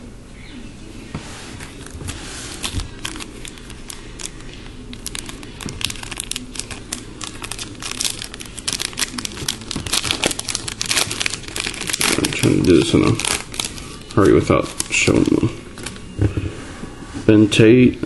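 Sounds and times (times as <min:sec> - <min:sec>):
wrapper crinkling and tearing: 0:01.6 - 0:16.0.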